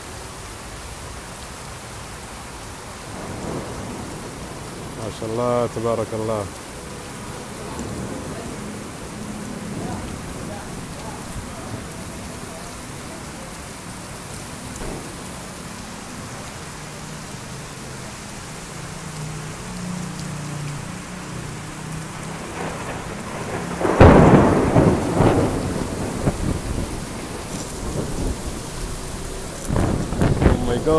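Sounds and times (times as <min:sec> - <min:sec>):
heavy rain falling: 0:00.0 - 0:30.9
low thunder rumble: 0:03.1 - 0:17.8, 0:22.0 - 0:30.9
loud thunder clap: 0:22.5 - 0:29.0, 0:29.7 - 0:30.9.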